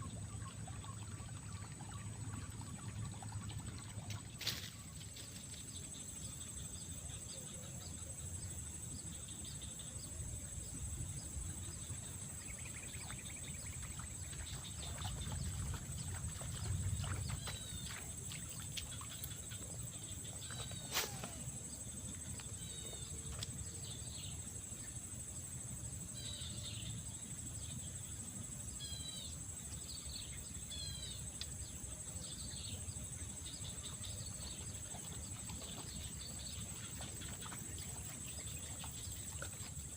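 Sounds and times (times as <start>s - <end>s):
small birds chirping: 11.2s - 25.0s.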